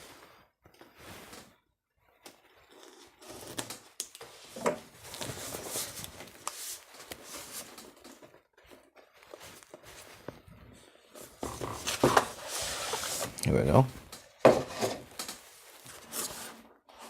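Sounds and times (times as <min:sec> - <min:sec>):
cardboard and plastic rustling: 0:03.5 - 0:17.0.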